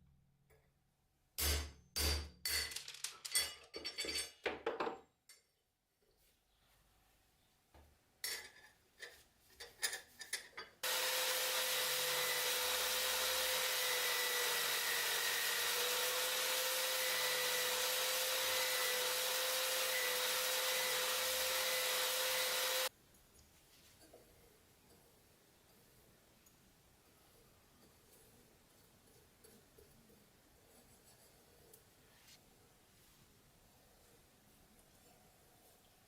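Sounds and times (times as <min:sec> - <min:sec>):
small power tool grinding: 0:10.8 - 0:22.9.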